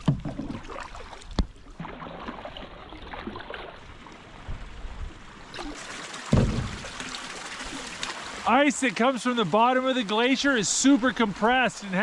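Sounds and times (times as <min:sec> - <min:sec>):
water trickling and lapping: 0:00.0 - 0:12.0
soft knocks: 0:06.3 - 0:06.8.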